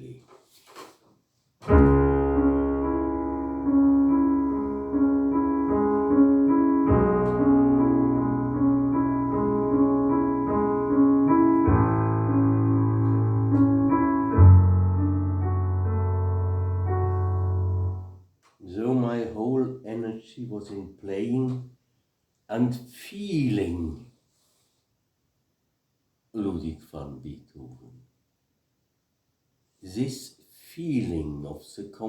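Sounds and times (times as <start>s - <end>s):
solo piano playing: 1.7s - 18.2s.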